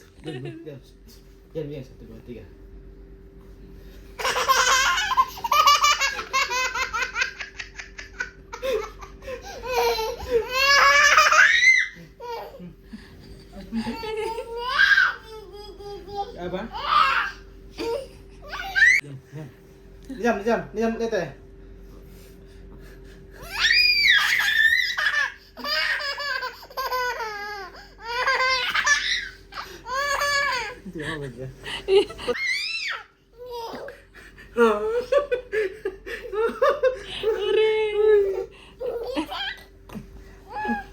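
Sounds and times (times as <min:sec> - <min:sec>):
small child laughing: 0:04.2 - 0:16.1, 0:23.5 - 0:30.8, 0:38.8 - 0:40.9.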